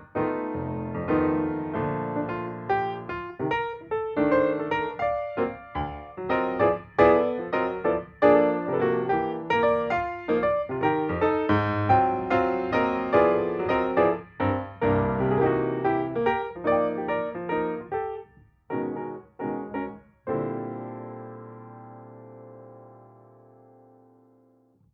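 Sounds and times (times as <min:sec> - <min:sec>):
piano music: 0:00.0 - 0:24.4.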